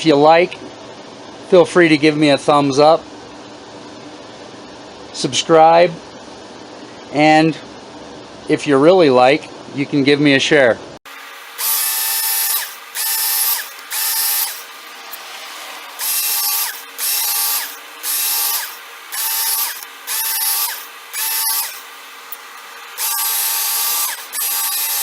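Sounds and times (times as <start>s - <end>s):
belt sharpener motor whining: 11.1s - 25.0s.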